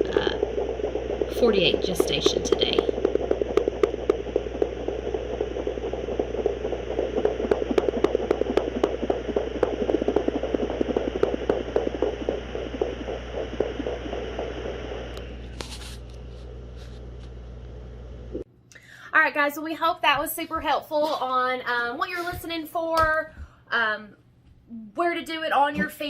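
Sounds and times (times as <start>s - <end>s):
doppler heartbeats pulsing: 0.0s - 15.5s
steady hum: 0.0s - 19.0s.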